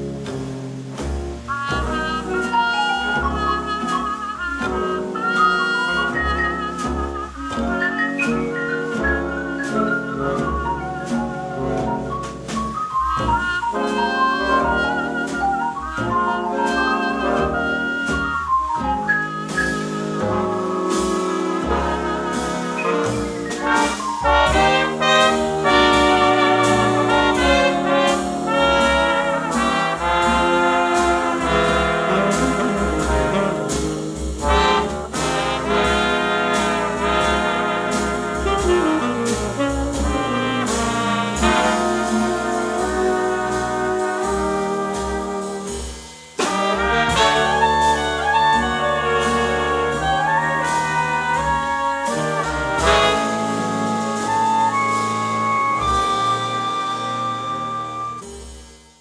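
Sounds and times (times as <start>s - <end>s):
trumpets and trombones: 0.0s - 58.5s
big band jazz playing: 0.0s - 59.0s.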